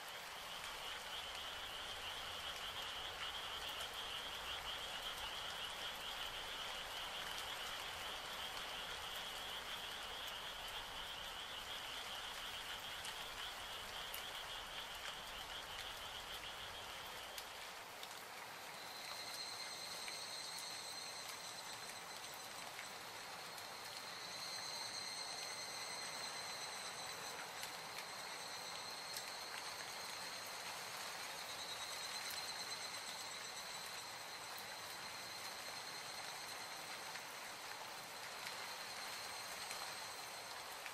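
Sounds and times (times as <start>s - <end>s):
steady rain: 0.0s - 40.9s
frogs calling: 0.1s - 40.8s
cicada calling: 18.8s - 36.9s.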